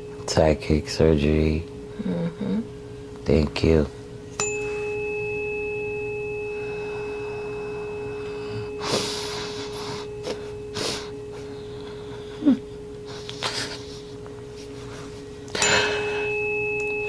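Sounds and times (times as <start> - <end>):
tuning fork ringing: 0.0 - 2.2, 4.3 - 13.9, 15.5 - 17.0.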